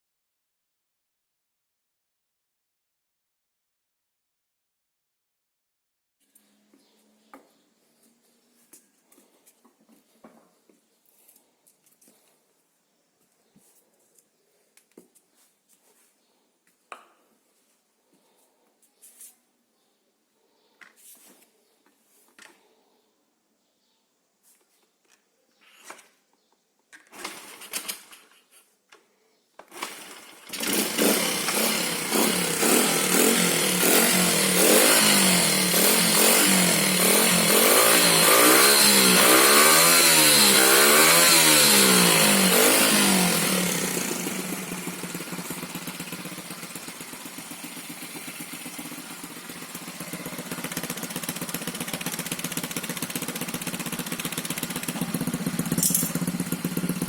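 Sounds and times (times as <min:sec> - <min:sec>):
minibike engine running: 0:29.7 - 0:57.0.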